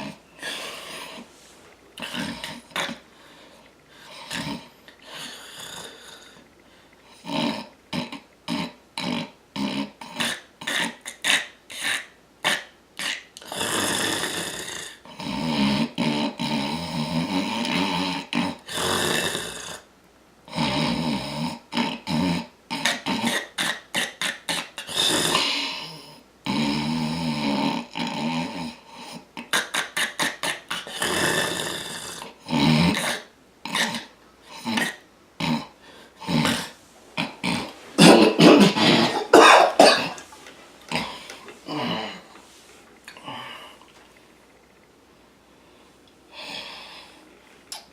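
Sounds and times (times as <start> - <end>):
man snoring: 2.0 - 3.0, 4.0 - 6.4, 7.1 - 12.0, 13.0 - 19.9, 20.5 - 23.5, 24.9 - 29.2, 30.7 - 40.1.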